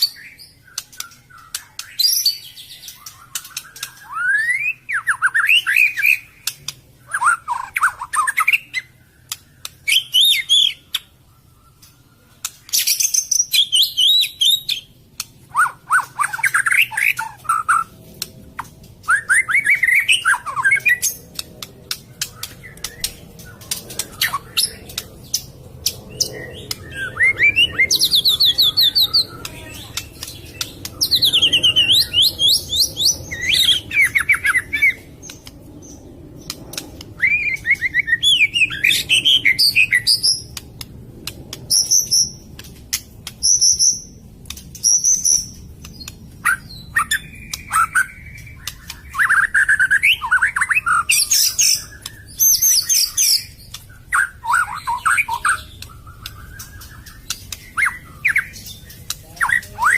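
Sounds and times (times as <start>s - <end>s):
bird singing varied phrases: 0.0s - 17.9s, 18.6s - 40.6s, 41.7s - 59.9s
sharp clicks: 6.4s - 6.9s, 9.2s - 9.9s, 21.0s - 26.9s, 27.9s - 31.5s, 35.0s - 37.2s, 40.4s - 43.5s, 44.4s - 46.4s, 55.7s - 59.2s.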